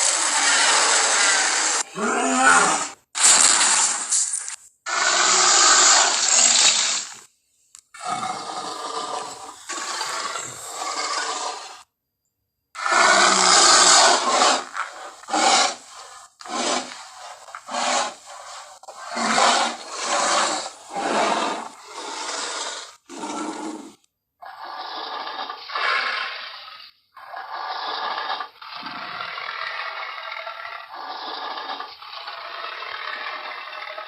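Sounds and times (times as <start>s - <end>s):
gorilla harsh vocal: 0.0s - 3.4s, 12.8s - 17.0s.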